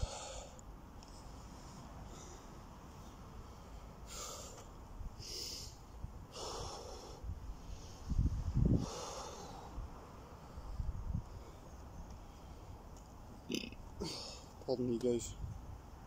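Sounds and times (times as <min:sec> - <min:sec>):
man breathing hard: 0:00.0 - 0:00.6, 0:03.3 - 0:12.8, 0:14.0 - 0:14.5.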